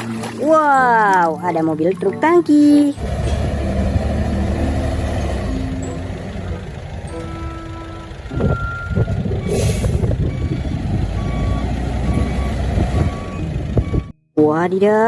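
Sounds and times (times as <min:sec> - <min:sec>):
heavy truck engine running: 0:02.9 - 0:14.1
reversing beeps: 0:07.1 - 0:14.2
air brake hiss: 0:09.5 - 0:10.0.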